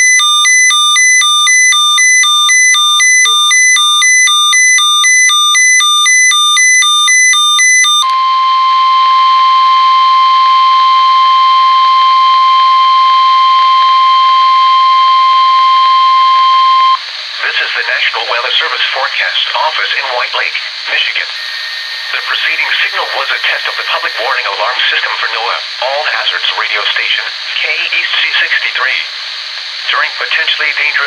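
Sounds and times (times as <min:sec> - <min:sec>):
steady single alarm tone: 0:00.0 - 0:17.0.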